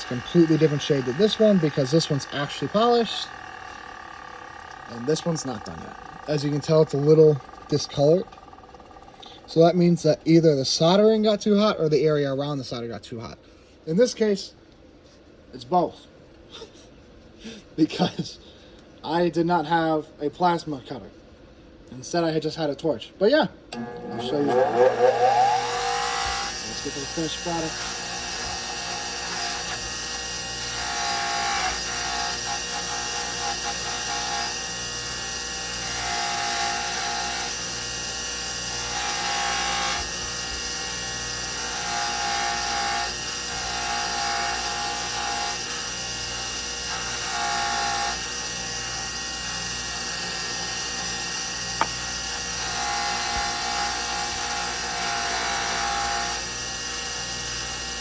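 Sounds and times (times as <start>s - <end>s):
electric polishing tool humming: 0.0s - 9.8s, 23.8s - 58.0s
whining tone: 0.0s - 10.1s, 23.7s - 31.0s.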